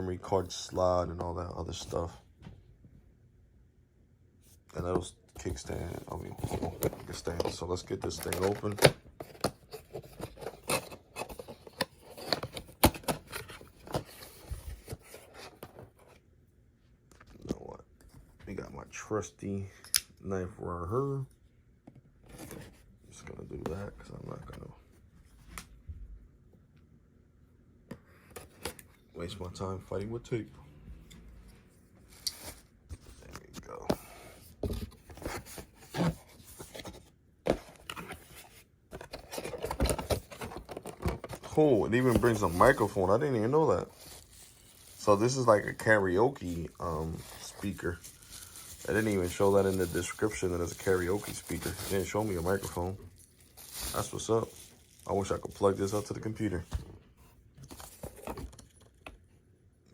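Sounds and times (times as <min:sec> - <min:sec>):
cardboard box rustling and scraping: 0:34.0 - 0:58.6.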